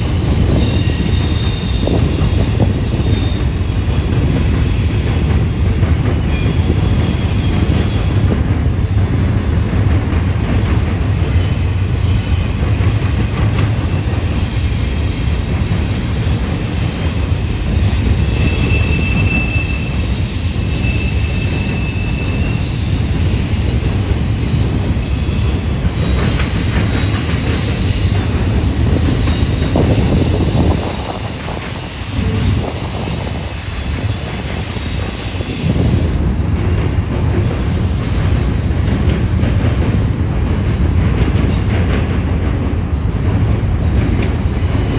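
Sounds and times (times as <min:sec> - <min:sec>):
freight train wheels rumbling on rail: 0:00.0 - 0:44.9
high wheel squeal: 0:00.3 - 0:09.2, 0:11.2 - 0:36.1.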